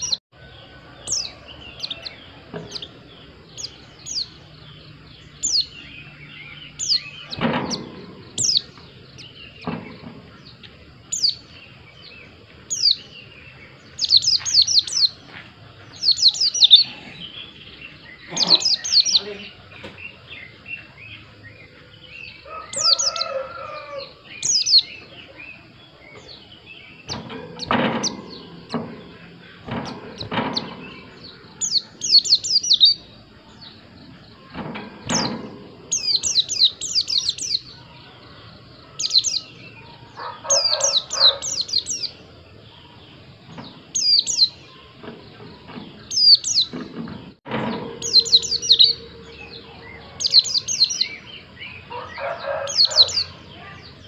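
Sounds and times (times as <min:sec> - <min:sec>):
bird chirping song: 0:00.0 - 0:54.0
sharp knocks: 0:07.3 - 0:08.7, 0:27.1 - 0:31.8, 0:34.4 - 0:36.6
harsh bird call: 0:16.0 - 0:19.7, 0:47.6 - 0:54.0.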